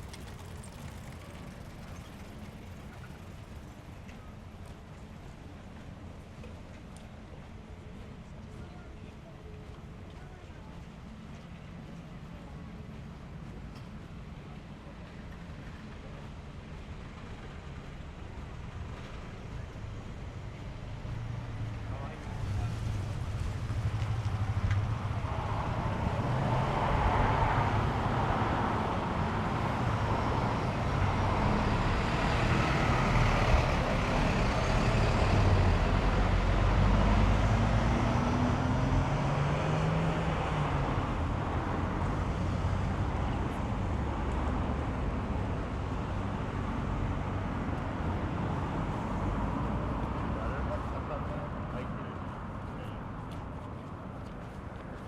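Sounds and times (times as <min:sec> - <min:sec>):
traffic rumble: 0:00.0 - 0:55.0
vehicle engine passing and accelerating: 0:20.8 - 0:52.5.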